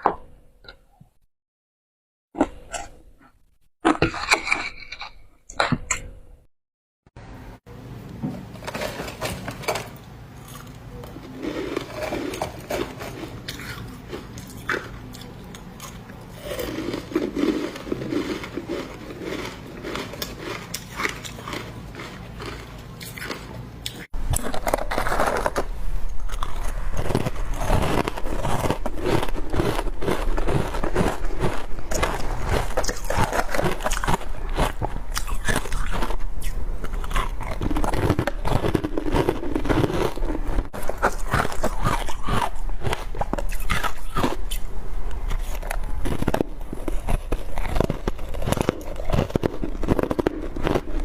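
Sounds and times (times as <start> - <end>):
wet chewing: 10.4 - 51.0
ice crunching: 24.3 - 36.3, 36.9 - 44.6, 45.3 - 51.0.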